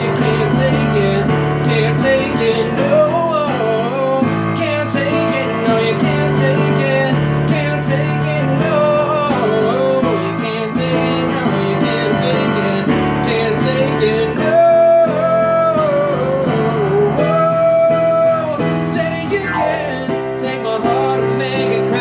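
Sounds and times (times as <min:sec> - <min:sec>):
melody line bending in pitch: 0:19.3 - 0:20.2.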